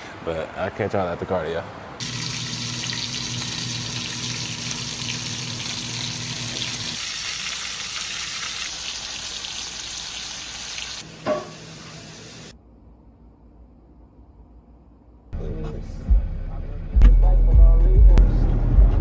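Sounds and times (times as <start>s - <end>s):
steady hiss: 2.0s - 12.5s
low hum: 12.6s - 19.0s.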